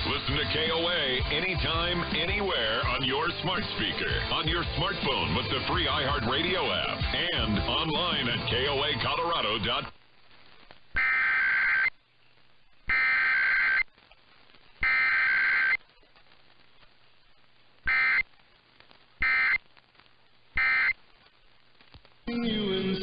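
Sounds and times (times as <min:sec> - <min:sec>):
raspy buzzing data bursts: 0:10.3 - 0:12.0, 0:12.8 - 0:13.9, 0:14.7 - 0:15.8, 0:17.7 - 0:21.6.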